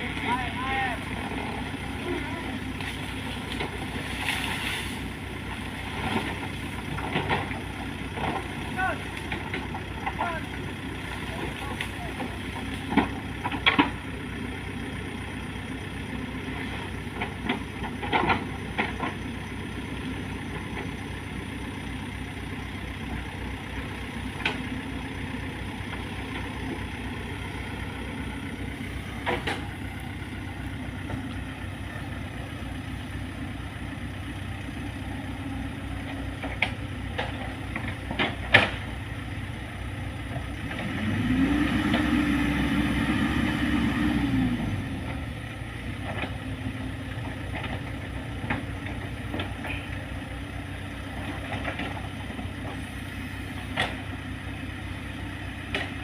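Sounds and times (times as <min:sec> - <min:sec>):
engine idling and revving: 0:00.0 - 0:56.0.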